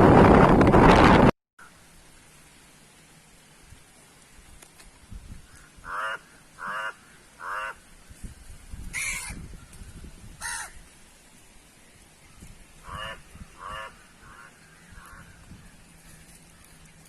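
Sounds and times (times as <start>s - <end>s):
bird calling: 5.5s - 7.8s, 12.2s - 16.9s.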